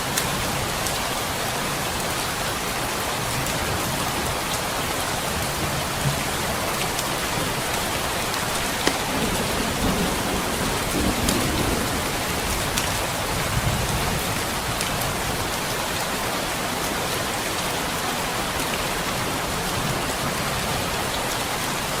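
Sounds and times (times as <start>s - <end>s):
heavy rain falling: 0.0s - 22.0s
log fire crackling: 7.0s - 9.8s
distant thunder rumbling: 7.4s - 14.2s.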